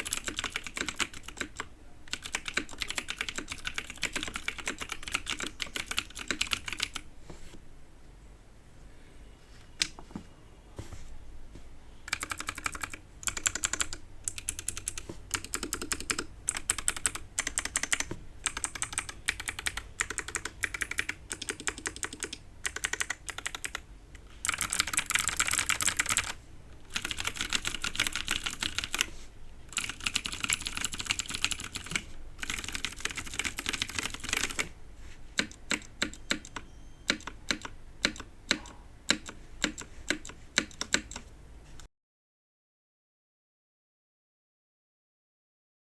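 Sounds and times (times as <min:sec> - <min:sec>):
clicky mechanical keyboard typing: 0:00.0 - 0:07.1, 0:12.1 - 0:23.8, 0:24.4 - 0:29.1, 0:29.7 - 0:34.7, 0:35.4 - 0:41.3.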